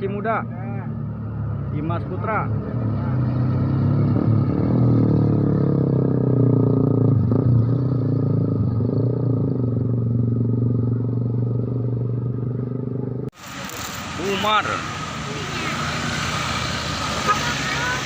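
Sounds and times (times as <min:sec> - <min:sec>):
bus engine running: 0:13.0 - 0:18.0.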